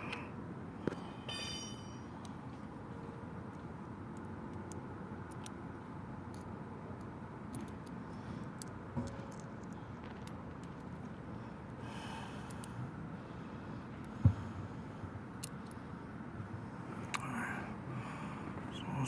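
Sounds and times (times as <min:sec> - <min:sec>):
steady background noise: 0:00.0 - 0:19.0
small metal parts clinking: 0:08.6 - 0:11.2.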